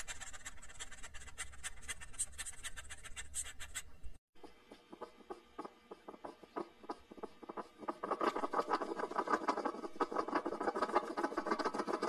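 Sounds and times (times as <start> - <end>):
hedgehog snuffling and clicking: 0.0 - 3.9.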